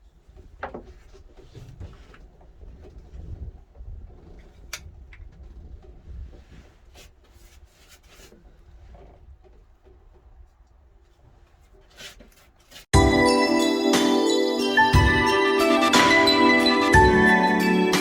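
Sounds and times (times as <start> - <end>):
rubbing and scraping on wood: 0.0 - 12.9.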